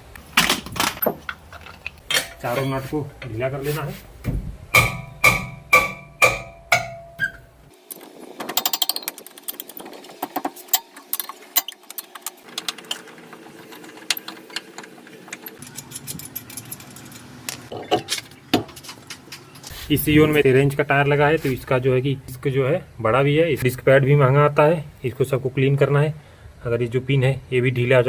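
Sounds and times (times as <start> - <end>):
metal knocks and handling: 4.2 - 7.5
wrench clinking on wheel nuts: 4.7 - 7.5, 13.6 - 19.5.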